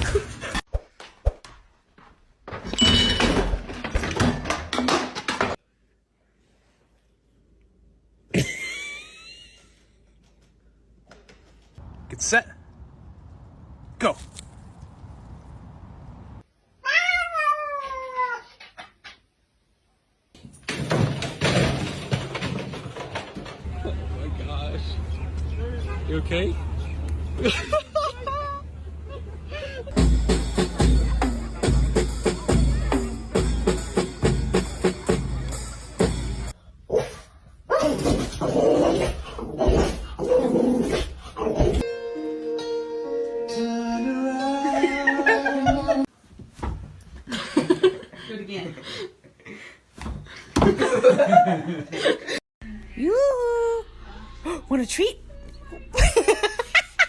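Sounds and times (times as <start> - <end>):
music with held notes: 30.0 - 36.5, 41.9 - 45.2.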